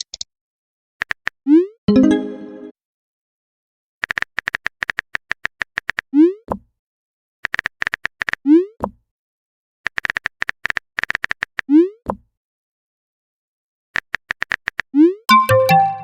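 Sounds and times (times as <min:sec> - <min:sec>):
electronic notification chime: 0:01.9 - 0:02.7, 0:15.3 - 0:16.0.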